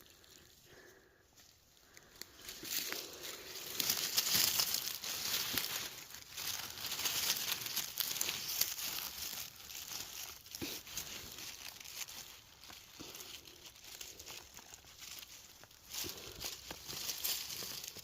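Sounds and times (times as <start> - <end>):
rustling of dry leaf litter: 0.0 - 18.0.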